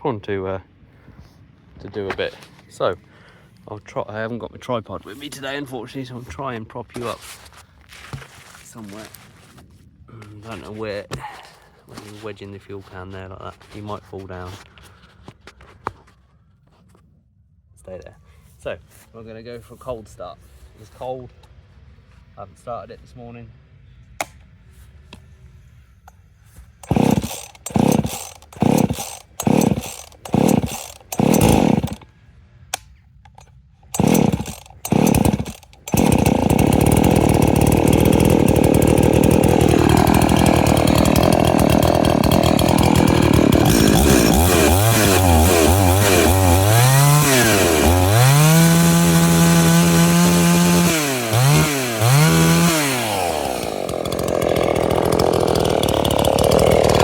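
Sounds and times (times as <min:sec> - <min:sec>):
chainsaw engine revving: 0:26.8 - 0:32.1, 0:33.9 - 0:57.0
chainsaw pull cord: 0:26.8 - 0:32.1, 0:33.3 - 0:57.0.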